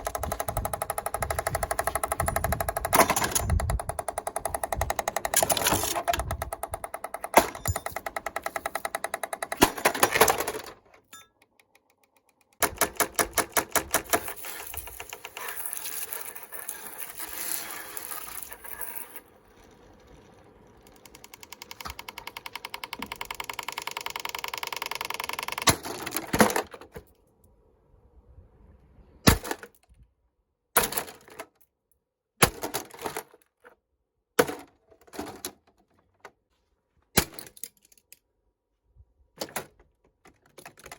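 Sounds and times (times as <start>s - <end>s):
exhaust fan clattering: 0.0s - 10.7s.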